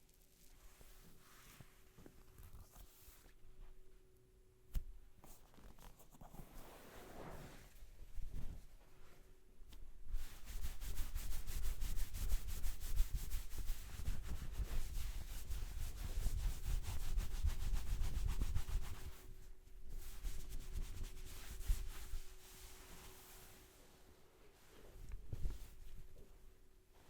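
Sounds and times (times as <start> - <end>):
hands rubbing hair: 10.2 - 19.3, 20.0 - 26.0.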